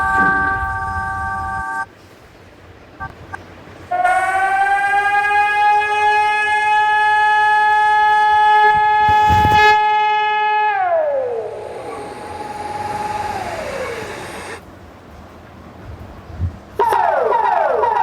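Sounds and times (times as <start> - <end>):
alarm tone: 0.0 - 1.9, 11.2 - 14.6.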